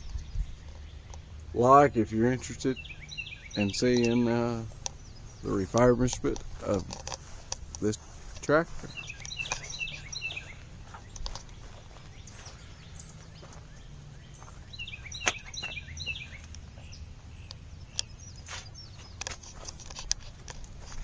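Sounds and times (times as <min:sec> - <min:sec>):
small bird chirping: 0:00.0 - 0:01.6, 0:02.3 - 0:21.0
low outdoor rumble: 0:00.0 - 0:21.0
scattered clicks: 0:03.6 - 0:05.0, 0:05.6 - 0:10.2.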